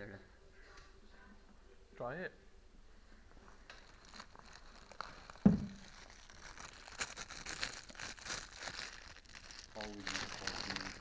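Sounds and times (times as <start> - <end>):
crinkling handling noise: 3.3 - 11.0.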